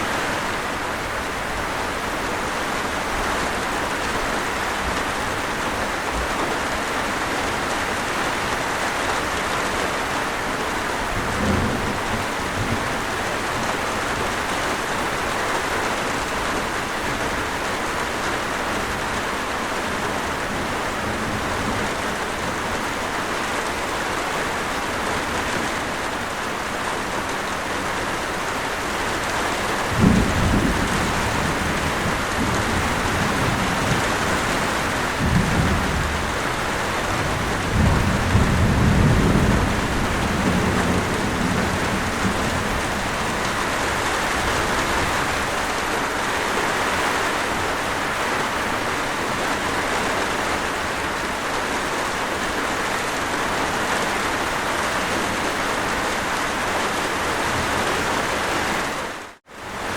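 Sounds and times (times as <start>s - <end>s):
heavy rain hissing: 0.0s - 59.9s
thunder rumbling: 11.0s - 15.3s, 28.7s - 46.3s.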